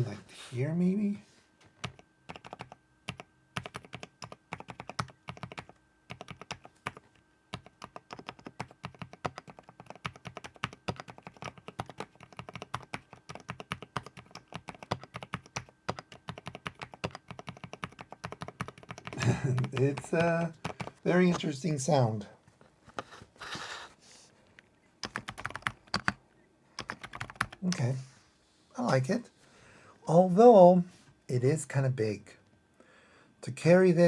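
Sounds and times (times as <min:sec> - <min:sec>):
mechanical keyboard typing: 0:01.8 - 0:21.5, 0:25.0 - 0:26.2, 0:26.8 - 0:27.8.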